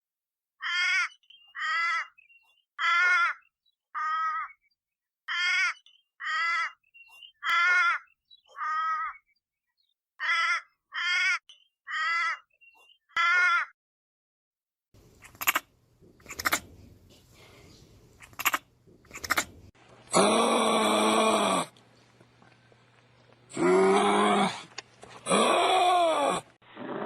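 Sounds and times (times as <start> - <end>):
harsh rasping animal calls: 0.6 - 2.2, 2.8 - 4.6, 5.3 - 9.3, 10.2 - 13.7, 15.2 - 16.8, 18.2 - 21.7.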